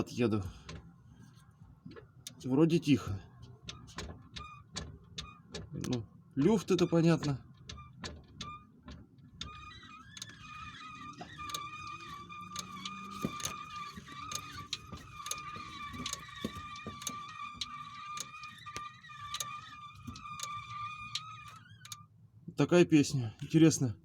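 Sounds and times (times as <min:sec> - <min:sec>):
high singing driveline squeal: 0:09.4 - 0:22.1.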